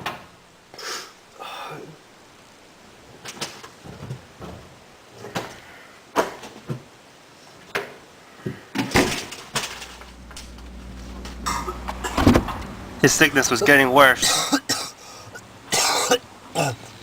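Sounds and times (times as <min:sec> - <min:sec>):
steady low hum: 0:09.3 - 0:17.0.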